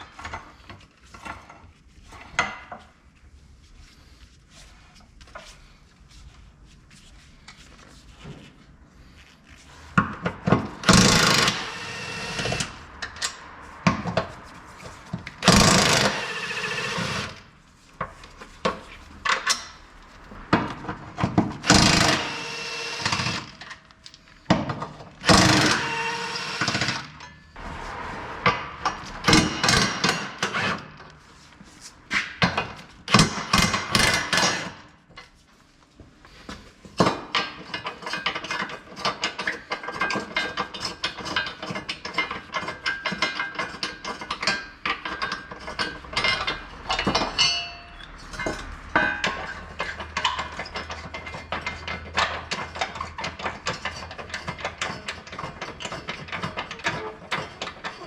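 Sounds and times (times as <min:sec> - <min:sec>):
metal clanking and knocking: 0:27.6 - 0:31.0, 0:37.0 - 0:58.0.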